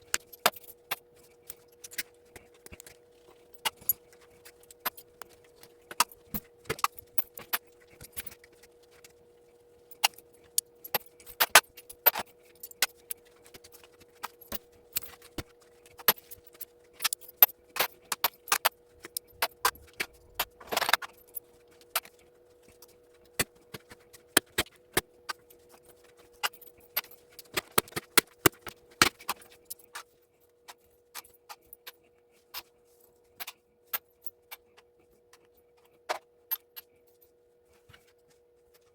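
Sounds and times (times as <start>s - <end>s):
faint steady hum: 0.0s - 38.9s
small brass parts clinking: 0.1s - 8.4s, 16.0s - 22.2s, 36.1s - 37.3s.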